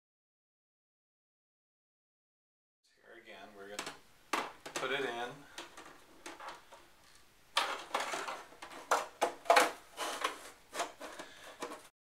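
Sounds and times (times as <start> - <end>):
computer parts knocking and scraping: 3.7 - 6.8, 7.6 - 11.9.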